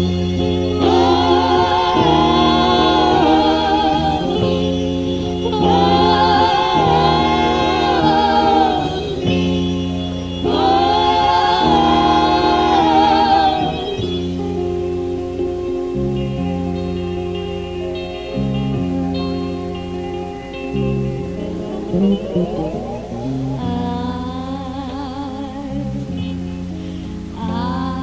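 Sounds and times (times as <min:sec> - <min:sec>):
sustained vocals with vibrato: 0:00.7 - 0:14.6, 0:21.0 - 0:26.2.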